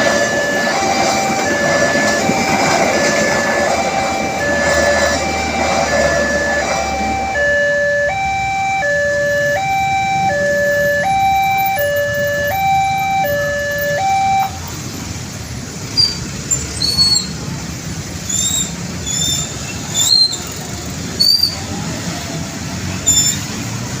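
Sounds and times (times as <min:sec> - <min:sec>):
level crossing warning alarm: 0:00.0 - 0:14.9
low traffic rumble: 0:00.0 - 0:24.0.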